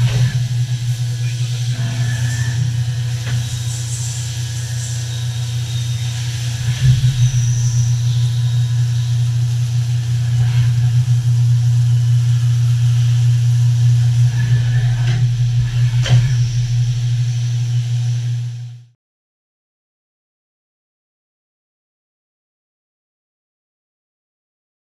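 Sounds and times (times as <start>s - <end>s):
milling machine hum: 0.0s - 18.9s.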